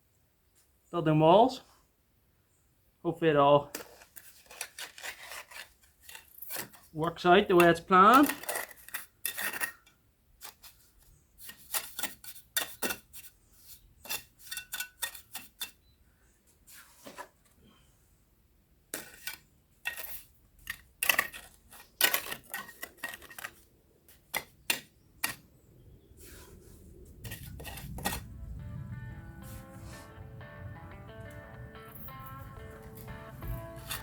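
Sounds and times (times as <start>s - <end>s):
trowel scraping and tapping stone: 3.7s - 15.9s, 18.9s - 25.5s, 27.2s - 28.3s, 32.6s - 34.0s
music: 28.3s - 34.0s.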